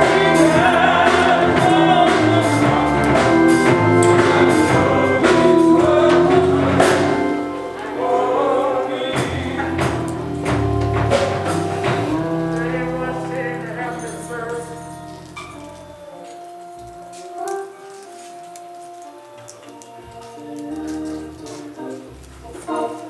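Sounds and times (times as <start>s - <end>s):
steady drum beat: 0.0s - 14.8s
voices singing gospel music: 0.0s - 16.7s, 19.5s - 23.0s.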